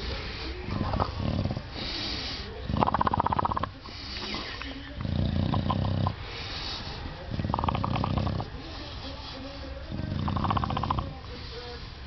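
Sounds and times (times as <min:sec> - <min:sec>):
dog breathing noisily: 0:00.0 - 0:12.0
dog grumbling: 0:00.7 - 0:01.8, 0:02.6 - 0:06.2, 0:07.3 - 0:08.6, 0:09.9 - 0:11.2.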